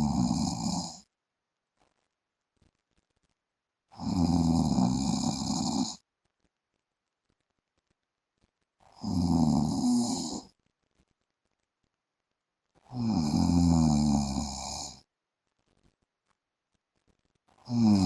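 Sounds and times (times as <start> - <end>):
man snoring: 0.0 - 1.0, 4.0 - 6.0, 9.0 - 10.5, 12.9 - 15.0, 17.7 - 18.0.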